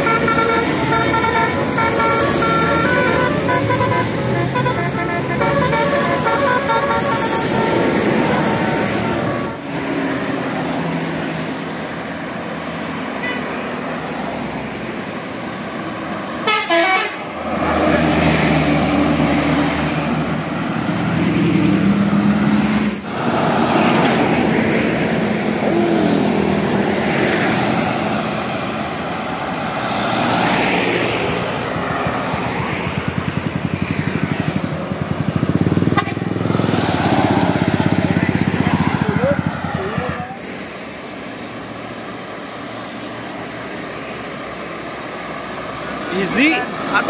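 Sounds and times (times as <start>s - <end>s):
car horn tooting: 0.0s - 9.6s, 13.2s - 13.7s, 16.4s - 17.2s, 35.9s - 36.3s
vehicles running: 0.0s - 47.0s.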